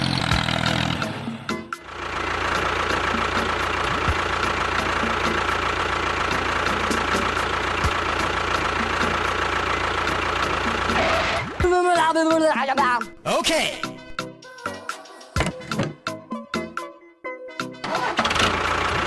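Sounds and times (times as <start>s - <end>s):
engine idling: 0.0s - 11.7s, 17.9s - 19.0s.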